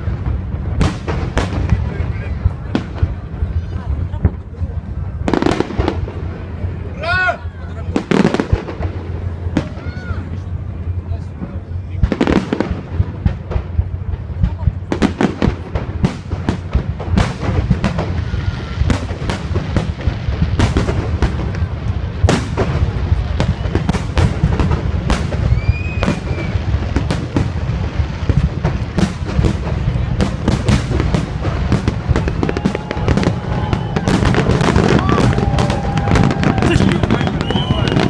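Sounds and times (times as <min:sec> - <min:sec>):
fireworks bangs and crackles: 0:00.0 - 0:38.0
low rumble: 0:00.0 - 0:38.0.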